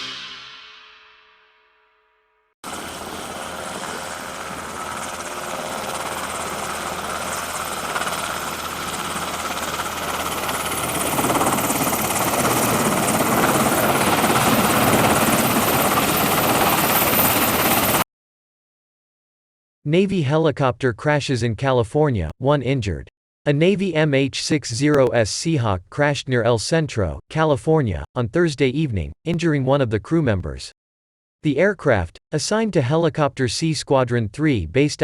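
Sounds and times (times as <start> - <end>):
helicopter running: 2.6 - 18.0.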